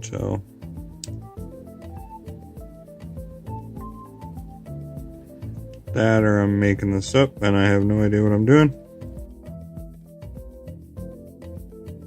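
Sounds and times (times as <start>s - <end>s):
electronic music with steady beat: 0.0s - 12.0s.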